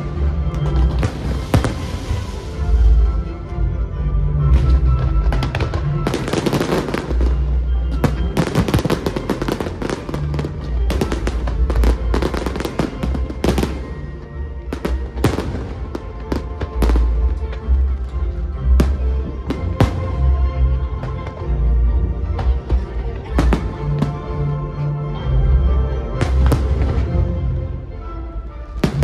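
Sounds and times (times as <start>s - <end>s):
fireworks bursting and crackling: 0.0s - 3.1s, 4.5s - 17.7s, 18.7s - 20.4s, 26.2s - 27.2s, 28.8s - 29.0s.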